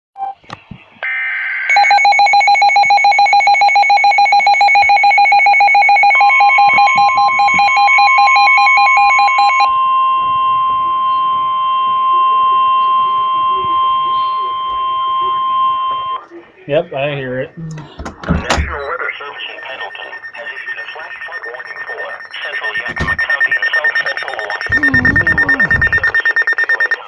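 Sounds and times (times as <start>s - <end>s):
rapid electronic alarm beeping: 1.7s - 16.2s, 18.4s - 27.0s
steady high alert tone: 19.6s - 27.0s
buzzy data burst: 24.6s - 26.5s.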